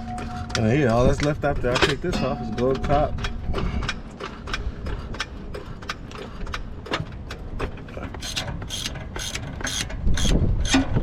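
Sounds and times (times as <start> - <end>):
ratchet wrench clicking: 8.2 - 10.9.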